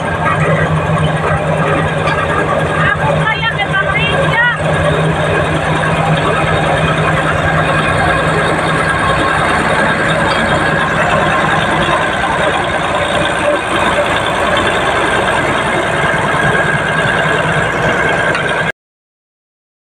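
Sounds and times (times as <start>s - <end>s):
bulldozer diesel engine running: 0.0s - 18.7s
steel tracks rattling and clanking: 0.0s - 18.7s.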